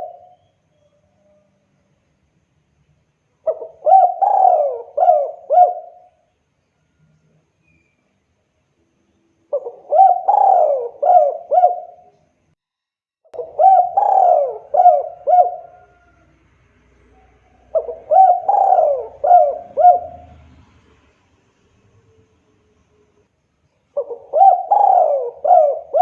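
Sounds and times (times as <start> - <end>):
dove cooing: 0.0 - 0.4, 3.4 - 6.2, 9.5 - 12.2, 13.4 - 16.4, 17.0 - 20.5, 24.0 - 26.0.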